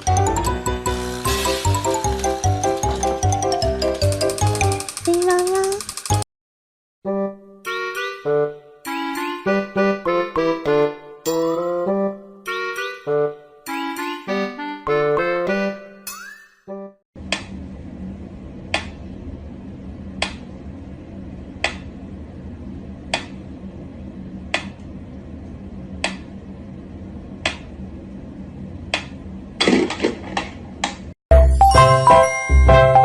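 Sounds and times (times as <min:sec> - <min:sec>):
sharp clicking: 0:04.0 - 0:06.2
steady low hum: 0:17.2 - 0:31.1.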